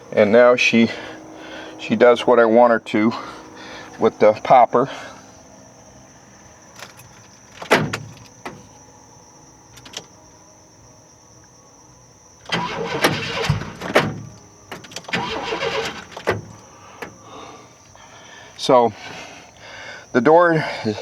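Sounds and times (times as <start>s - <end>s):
van door clunking and rattling: 6.7s - 9.0s, 9.7s - 10.2s, 12.4s - 17.5s
van door latch clicks: 6.8s - 8.8s, 9.7s - 10.2s, 12.5s - 17.2s.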